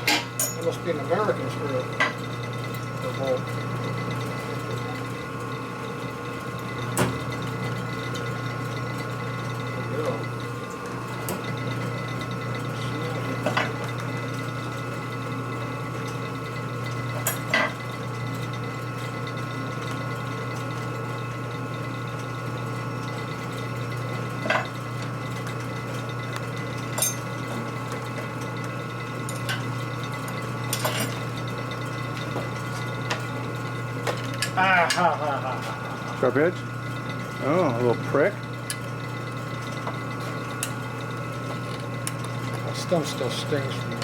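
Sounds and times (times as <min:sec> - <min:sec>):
machine tool humming and whining: 0:00.0 - 0:44.0.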